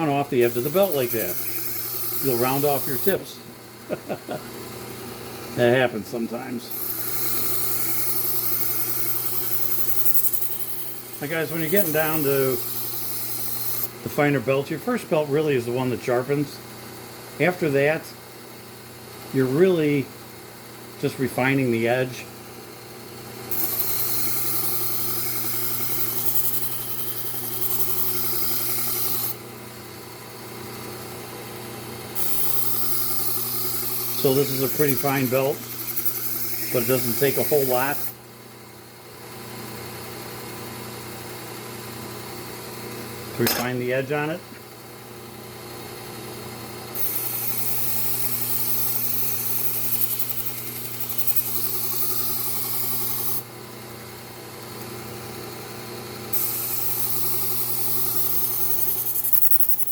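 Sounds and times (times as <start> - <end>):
belt sander grinding knife edge: 0.0 - 3.3, 5.4 - 14.1, 23.5 - 29.4, 32.2 - 38.2, 43.3 - 44.1, 46.9 - 53.4, 56.3 - 59.9
motor hum: 0.0 - 14.2, 22.4 - 59.9.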